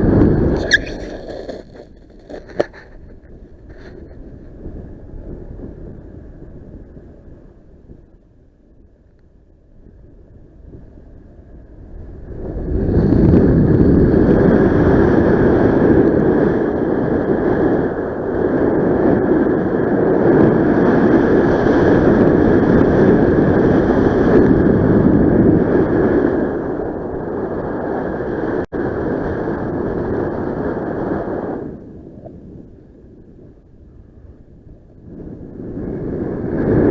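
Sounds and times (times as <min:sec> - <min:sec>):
wind rushing over microphone: 0:00.0 - 0:36.9.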